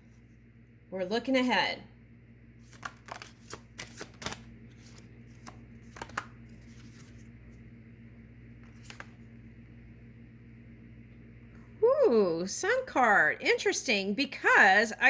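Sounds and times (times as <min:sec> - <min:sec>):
steady low hum: 0:00.0 - 0:15.0
cards being shuffled: 0:02.6 - 0:07.6, 0:08.6 - 0:09.3.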